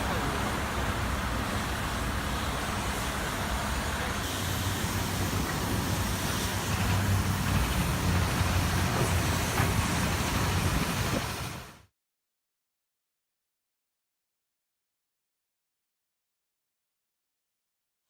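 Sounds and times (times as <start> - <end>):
road traffic rumble: 0.0 - 11.9.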